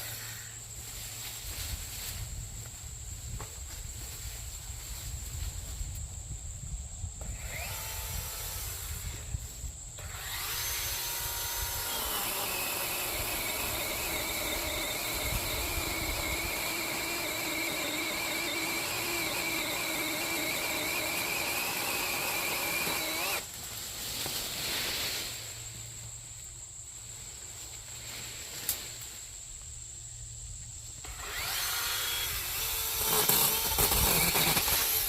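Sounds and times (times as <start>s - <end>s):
power tool motor whining: 7.2s - 9.3s, 10.0s - 23.5s, 31.0s - 35.0s.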